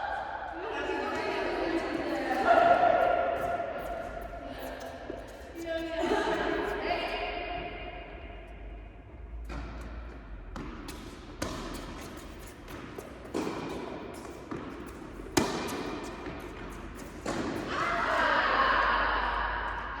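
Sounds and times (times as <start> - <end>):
tennis ball bouncing: 9.4 - 17.8
tennis racket strikes: 10.6 - 16.4.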